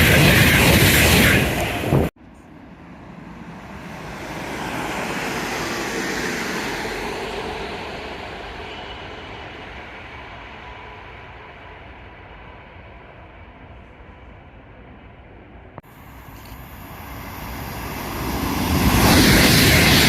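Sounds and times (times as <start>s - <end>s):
passing train rushing: 0.0s - 20.0s
loud rush: 16.8s - 20.0s.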